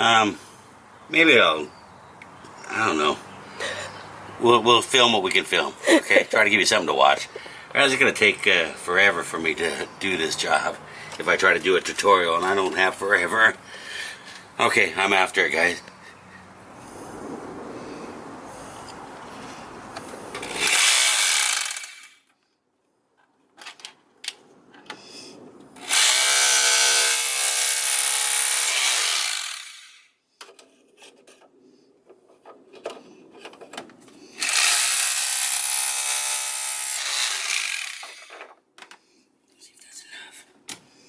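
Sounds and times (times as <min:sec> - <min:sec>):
power tool whirring: 0:20.4 - 0:22.2, 0:25.8 - 0:30.1, 0:34.4 - 0:38.5.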